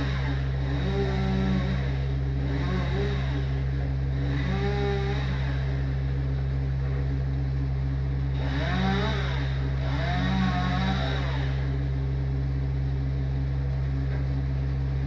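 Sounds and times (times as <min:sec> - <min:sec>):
engine droning: 0:00.0 - 0:15.0.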